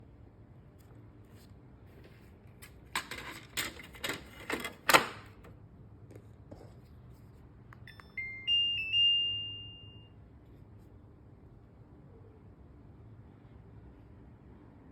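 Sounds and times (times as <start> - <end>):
electronic start-up chime: 7.9 - 10.2.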